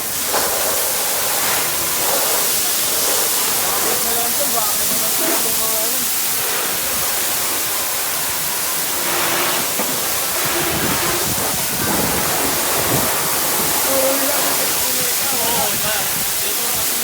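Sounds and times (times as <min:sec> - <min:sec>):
water spraying from fire hose: 0:00.0 - 0:17.0
faint voices: 0:10.8 - 0:17.0.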